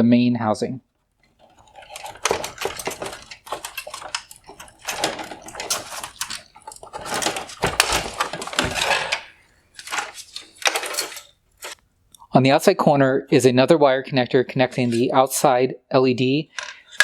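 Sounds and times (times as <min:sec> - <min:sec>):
plastic parts clicking and scraping: 0:01.0 - 0:12.3, 0:16.5 - 0:17.0.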